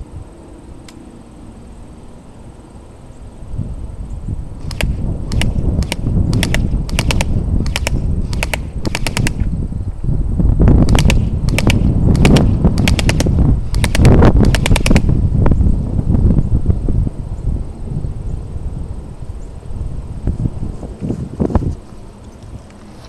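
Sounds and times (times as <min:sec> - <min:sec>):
airsoft gun firing bursts: 0:04.6 - 0:09.5, 0:10.8 - 0:15.2.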